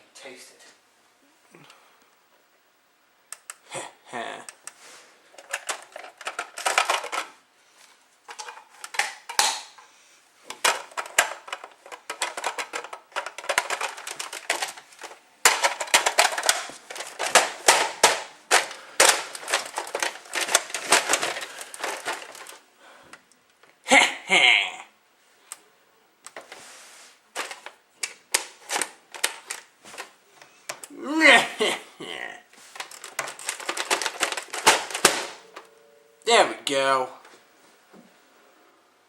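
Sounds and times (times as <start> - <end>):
hard objects clicking and clattering: 5.4 - 7.4, 8.3 - 9.9, 10.5 - 22.6, 27.4 - 30.9, 32.6 - 35.7.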